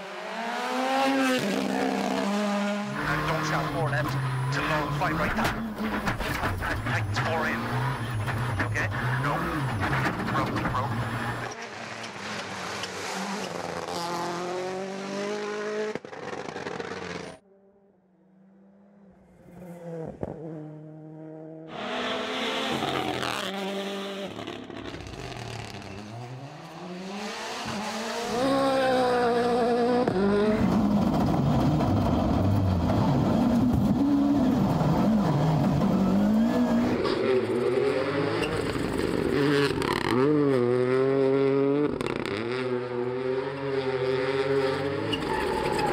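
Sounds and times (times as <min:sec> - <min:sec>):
rally car engines revving: 0:00.0 - 0:17.4, 0:18.6 - 0:45.9
tyre squeal: 0:38.3 - 0:39.0, 0:45.0 - 0:45.9.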